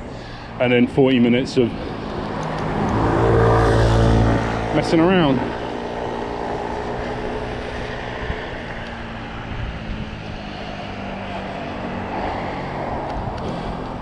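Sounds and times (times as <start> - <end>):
passing motor traffic drone: 0.0 - 14.0
wind noise on microphone: 6.6 - 14.0.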